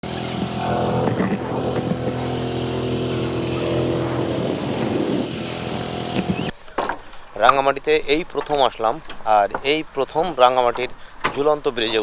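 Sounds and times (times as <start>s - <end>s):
engine humming steadily: 0.0s - 6.5s
noisy rush: 0.0s - 6.5s.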